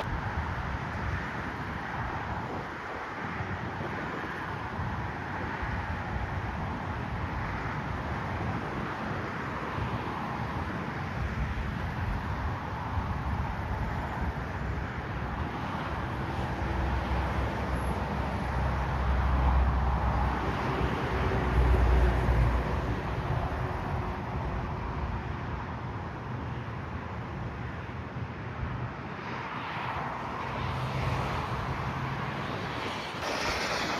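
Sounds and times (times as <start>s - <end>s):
jet airliner engines rushing: 29.0s - 33.9s.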